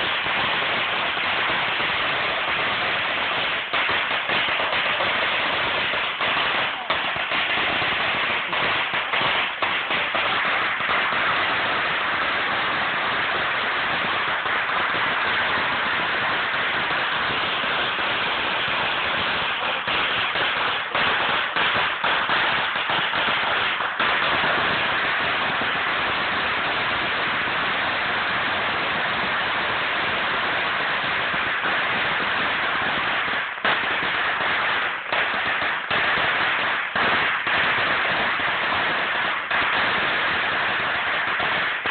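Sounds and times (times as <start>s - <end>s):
firecrackers crackling rapidly: 0.0s - 41.9s.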